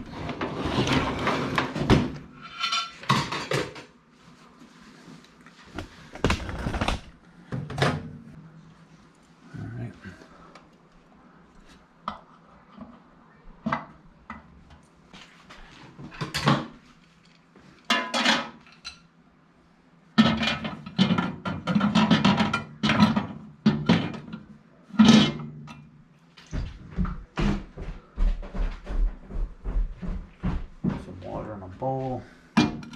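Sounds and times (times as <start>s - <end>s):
dishware clinking and clattering: 2.4s - 3.9s.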